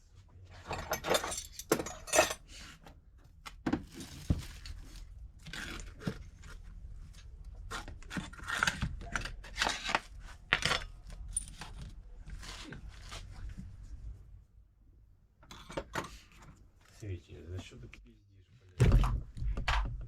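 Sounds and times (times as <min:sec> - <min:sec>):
metal tools clinking: 0:00.6 - 0:02.5, 0:10.7 - 0:11.8.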